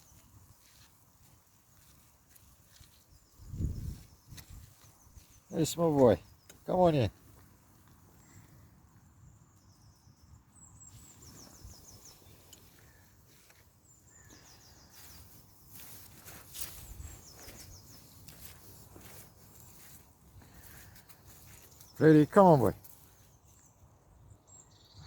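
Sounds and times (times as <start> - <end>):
light footsteps: 0.0 - 8.1, 14.9 - 22.0
faint outdoor ambience: 0.0 - 25.0.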